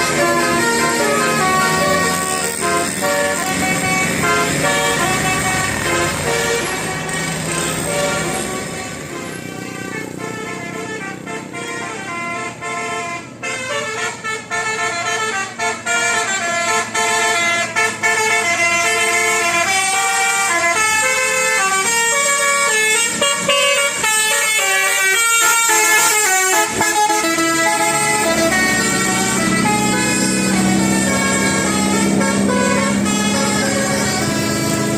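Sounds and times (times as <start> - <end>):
bus multi-tone air horn melody: 0.0 - 34.9.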